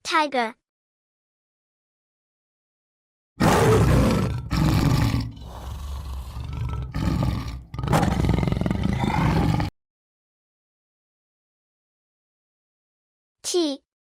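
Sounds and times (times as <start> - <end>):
tiger roaring and growling: 3.4 - 9.7.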